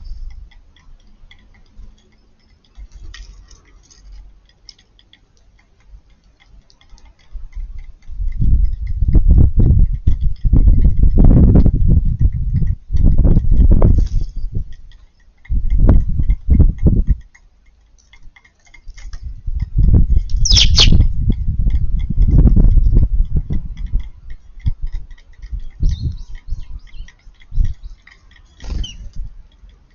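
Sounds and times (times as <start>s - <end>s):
birds pecking on hard surface: 0.0s - 29.9s
faint high ticking: 0.0s - 29.9s
sparrow chirp: 20.3s - 21.1s, 25.5s - 29.1s.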